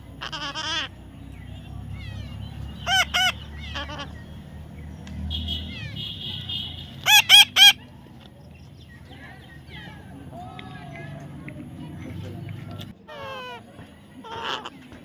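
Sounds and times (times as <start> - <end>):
parrot chattering: 0.2 - 0.9, 1.9 - 4.2, 5.6 - 7.8
parrot squawking: 0.2 - 0.9, 1.9 - 4.3, 5.4 - 7.9.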